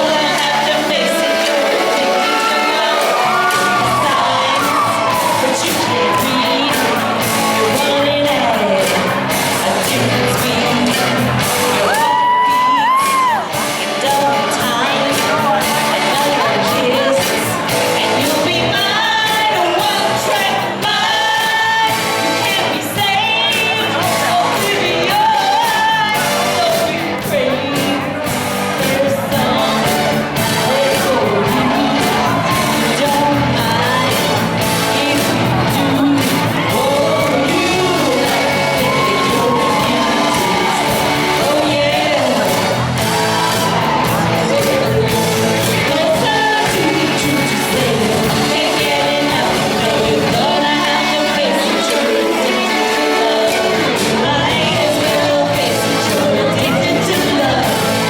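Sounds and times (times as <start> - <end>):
rock song with singing: 0.0 - 58.0
shouts and whoops: 2.1 - 6.3, 11.8 - 13.5.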